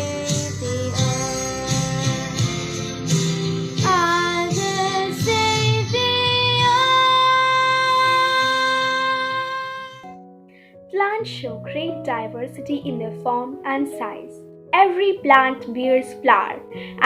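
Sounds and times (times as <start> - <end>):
backing music: 0.0 - 17.0
child singing: 3.8 - 10.0.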